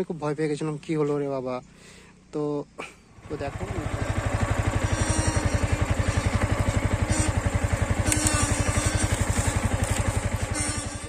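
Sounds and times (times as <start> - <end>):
motorcycle engine idling: 2.9 - 11.0.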